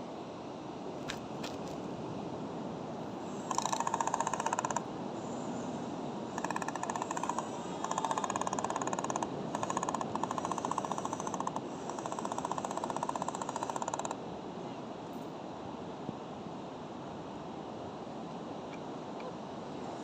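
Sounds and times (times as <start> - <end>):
excavator mechanical rattle: 3.5 - 4.8, 6.4 - 14.1.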